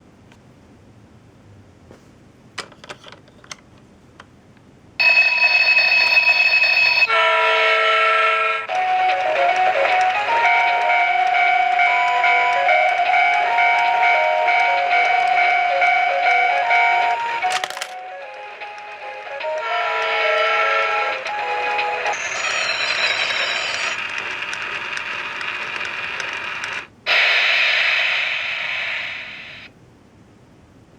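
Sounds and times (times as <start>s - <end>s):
long electronic tones: 7.0s - 24.0s
tinny electronic melody: 8.7s - 24.0s
toy motor and gears whirring: 21.5s - 29.5s.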